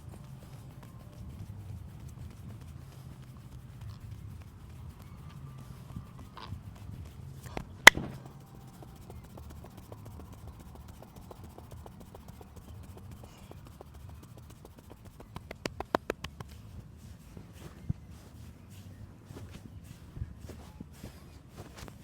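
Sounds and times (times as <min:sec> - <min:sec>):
hands slapping body: 0:07.5 - 0:16.8.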